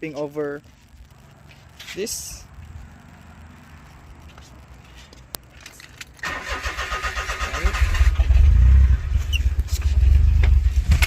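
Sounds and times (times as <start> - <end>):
car engine fast idle: 6.2 - 9.2
starter motor cranking: 6.2 - 9.4.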